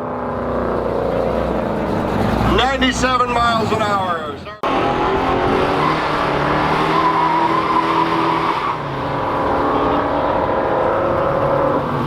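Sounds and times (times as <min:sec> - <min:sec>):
racing car engines revving: 0:00.0 - 0:12.0
tire squeal: 0:04.6 - 0:12.0.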